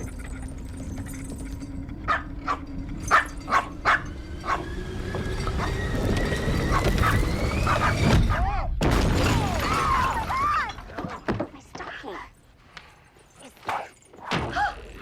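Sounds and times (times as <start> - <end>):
dog barking: 2.1 - 4.6.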